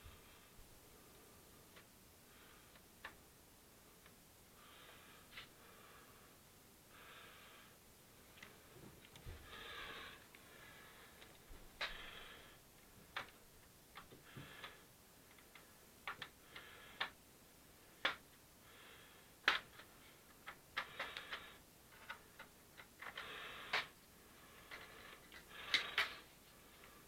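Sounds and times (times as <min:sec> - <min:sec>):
plastic clicks: 0:13.1 - 0:17.2, 0:18.0 - 0:18.3, 0:19.4 - 0:24.0.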